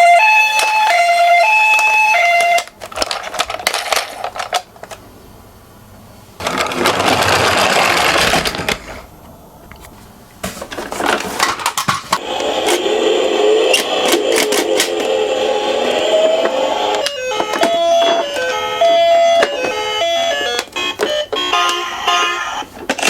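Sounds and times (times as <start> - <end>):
toy two-tone siren: 0.0 - 2.7, 13.7 - 22.7
toy cars rattling down slope: 6.4 - 9.0.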